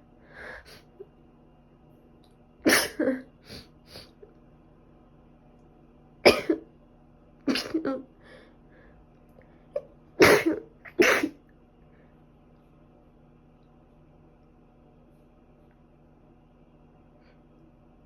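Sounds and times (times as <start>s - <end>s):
person sneezing: 2.7s - 4.1s, 7.5s - 8.0s, 10.2s - 11.4s.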